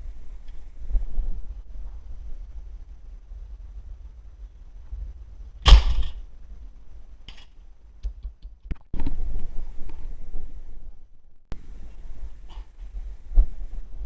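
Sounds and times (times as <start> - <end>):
airgun burst of air: 5.7 - 6.2
small clicks and knocks: 7.3 - 9.2.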